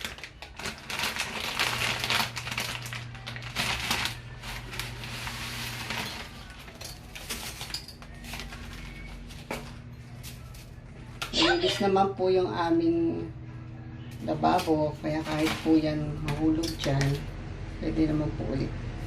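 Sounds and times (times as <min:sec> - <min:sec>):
faint steady hum: 0:01.9 - 0:16.3.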